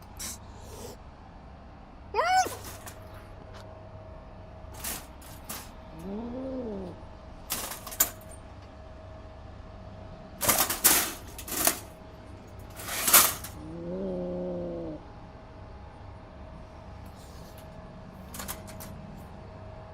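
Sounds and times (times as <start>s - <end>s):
cat hissing: 0.0s - 1.0s, 2.2s - 2.9s, 5.9s - 7.0s, 12.9s - 15.0s
cat growling yowls: 2.1s - 2.8s, 5.9s - 7.0s, 13.4s - 15.1s.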